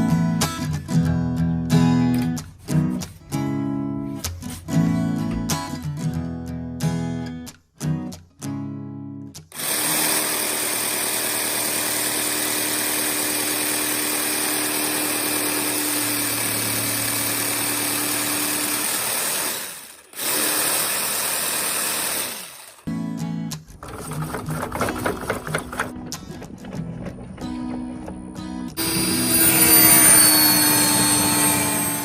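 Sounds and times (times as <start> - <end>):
electric power tool running: 9.6 - 22.9, 28.8 - 32.0.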